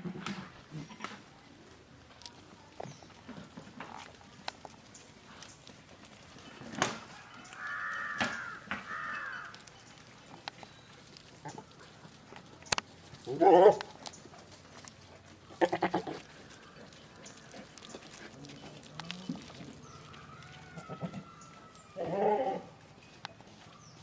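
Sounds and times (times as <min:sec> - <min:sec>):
goats bleating: 0:07.4 - 0:09.6, 0:15.5 - 0:17.0, 0:20.8 - 0:22.8.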